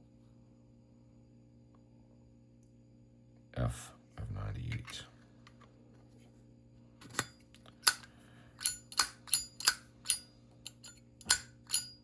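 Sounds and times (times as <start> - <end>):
metal lighter clicks: 7.8 - 12.0.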